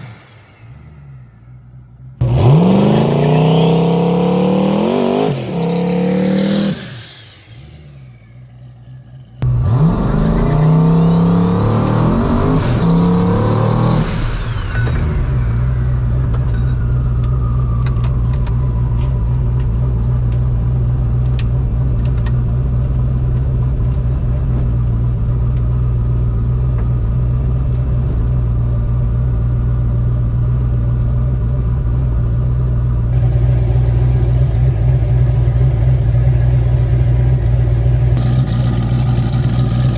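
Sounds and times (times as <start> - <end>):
turbo whine: 0.0 - 20.3, 33.2 - 39.9
engine accelerating hard: 0.0 - 29.6, 33.1 - 39.9.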